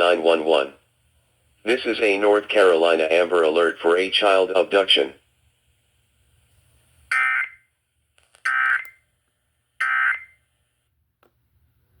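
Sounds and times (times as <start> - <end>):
buzzy warbling data tones: 7.1 - 7.6, 8.5 - 9.0, 9.8 - 10.4.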